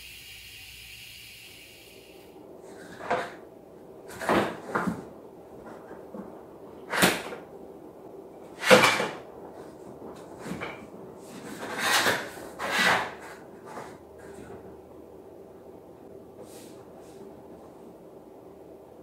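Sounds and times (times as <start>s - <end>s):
drawers sliding and knocking shut: 4.1s - 5.1s, 8.5s - 9.2s, 10.2s - 14.0s.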